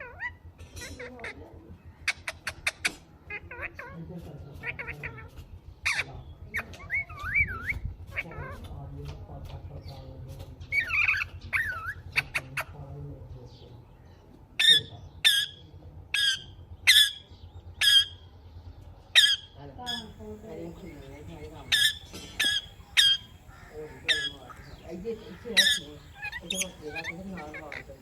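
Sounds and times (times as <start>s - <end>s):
low steady hum: 20.0s - 28.0s
parrot whistled calls: 21.0s - 24.8s
parrot screeches: 21.6s - 28.0s.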